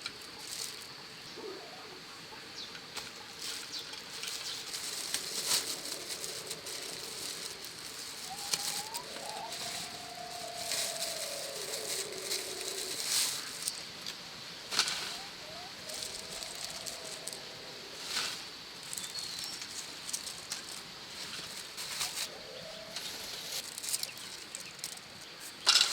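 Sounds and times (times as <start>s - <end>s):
light rustling: 3.4s - 22.3s
wavering bird call: 4.5s - 13.8s, 14.7s - 18.1s.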